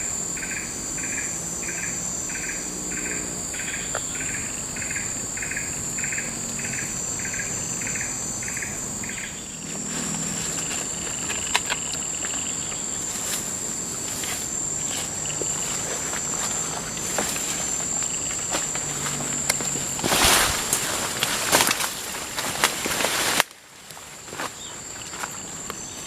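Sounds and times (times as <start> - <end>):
pulsed chirping call: 0.0 - 20.1
insects droning: 0.0 - 26.0.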